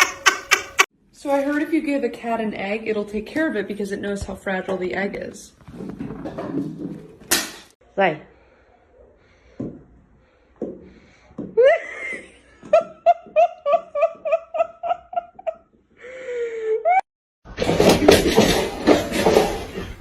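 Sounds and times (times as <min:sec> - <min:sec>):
high-pitched laughter: 0:00.0 - 0:00.9.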